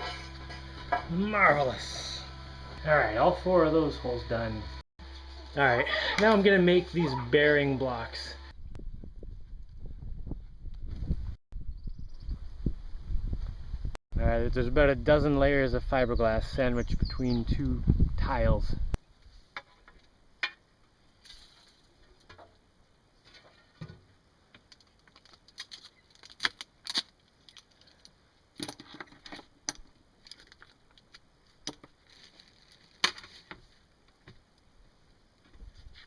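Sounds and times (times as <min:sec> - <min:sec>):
small hard pieces clicking and knocking: 0:24.5 - 0:32.0.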